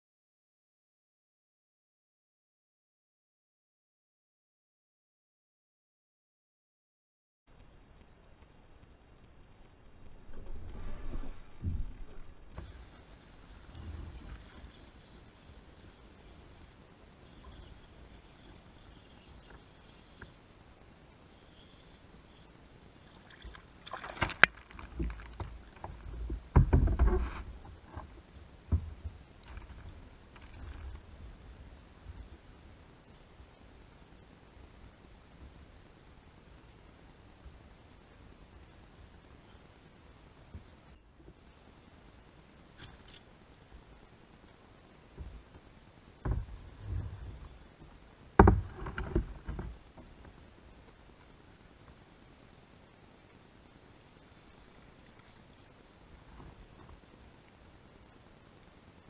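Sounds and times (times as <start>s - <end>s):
knocks and thumps against kayak: 23.9s - 31.1s, 46.2s - 50.4s
knocks on a kayak: 48.4s - 49.7s.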